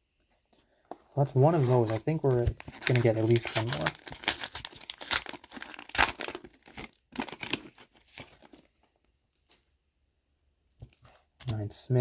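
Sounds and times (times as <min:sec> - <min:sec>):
card pack wrapper tearing and crinkling: 0:01.3 - 0:08.7.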